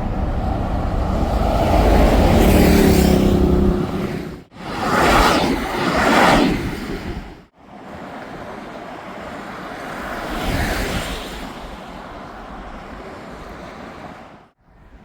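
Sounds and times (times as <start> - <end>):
vehicles passing: 0.0 - 4.6.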